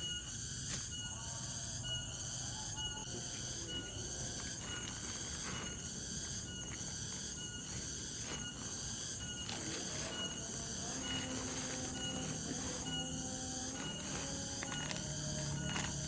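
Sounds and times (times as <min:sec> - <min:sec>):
insects chirping: 0:00.0 - 0:16.0.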